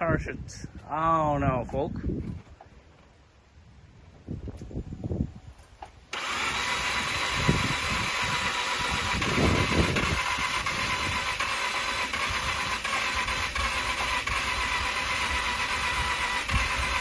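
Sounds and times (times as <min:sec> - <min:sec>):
engine cranking without starting: 0:05.8 - 0:17.0.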